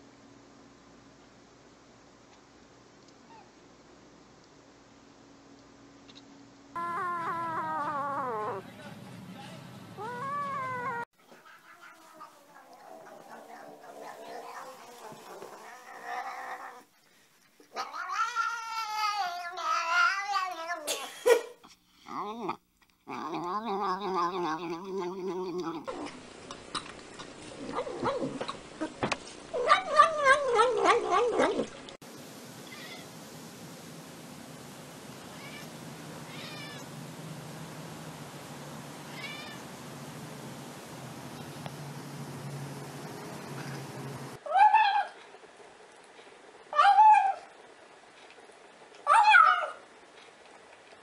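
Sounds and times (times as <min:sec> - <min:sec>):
cat yowling: 0:06.8 - 0:08.6, 0:10.0 - 0:16.9, 0:17.8 - 0:20.9, 0:29.6 - 0:31.6, 0:35.3 - 0:36.9, 0:39.1 - 0:39.6, 0:49.1 - 0:49.8.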